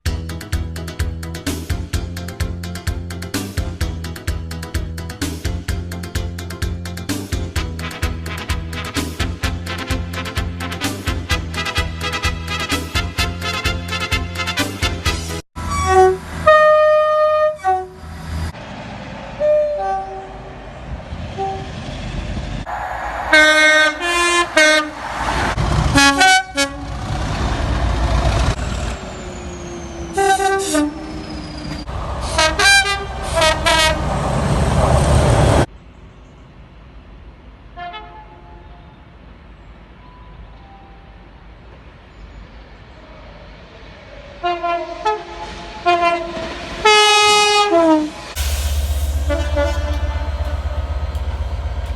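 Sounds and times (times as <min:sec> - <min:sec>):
rumble of passing train: 0:01.0 - 0:51.9
train horn blasts: 0:07.6 - 0:18.1, 0:19.4 - 0:20.5, 0:21.4 - 0:21.8, 0:22.7 - 0:27.1, 0:30.2 - 0:31.0, 0:32.2 - 0:34.2, 0:37.8 - 0:38.9, 0:44.4 - 0:51.9.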